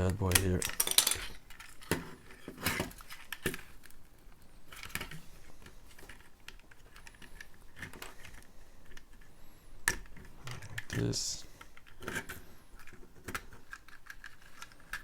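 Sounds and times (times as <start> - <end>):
plastic bricks clicking: 11.8 - 15.0.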